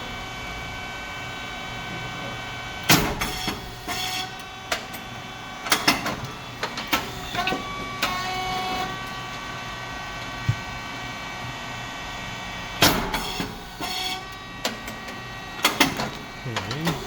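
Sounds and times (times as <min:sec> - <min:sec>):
pump motor hum: 0:00.0 - 0:17.0
sharp cracks and clacks: 0:14.6 - 0:17.0.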